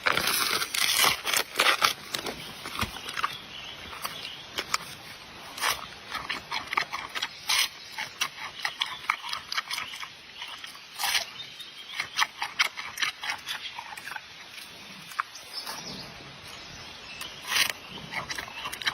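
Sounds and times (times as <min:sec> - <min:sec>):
panda crunching bamboo: 0:00.0 - 0:16.0, 0:17.2 - 0:18.9.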